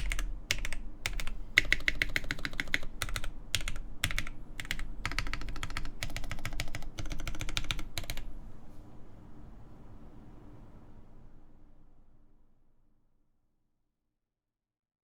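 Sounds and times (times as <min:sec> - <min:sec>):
fast typing on mechanical keyboard: 0:00.0 - 0:08.3.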